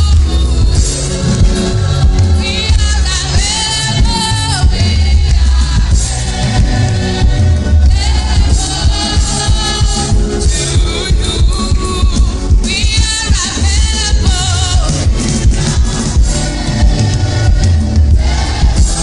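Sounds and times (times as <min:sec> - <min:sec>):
bass-heavy beat: 0:00.0 - 0:19.0
worship song with sung vocals: 0:00.0 - 0:19.0.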